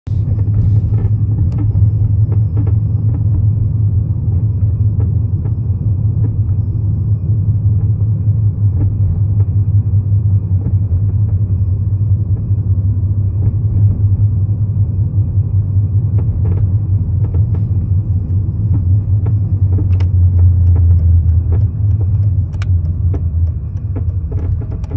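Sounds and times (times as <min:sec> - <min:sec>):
car engine rumble: 0:00.0 - 0:24.9
faint creaks or clicks: 0:16.2 - 0:24.9.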